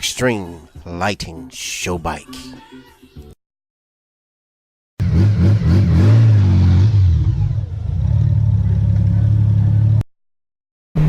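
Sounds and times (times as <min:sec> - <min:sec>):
motorcycle engine revving: 0:05.0 - 0:10.0.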